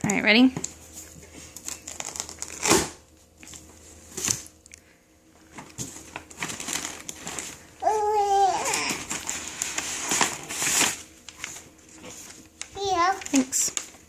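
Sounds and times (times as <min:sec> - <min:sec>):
snack packaging crinkling: 0:01.6 - 0:02.7, 0:05.9 - 0:07.7, 0:08.4 - 0:14.0.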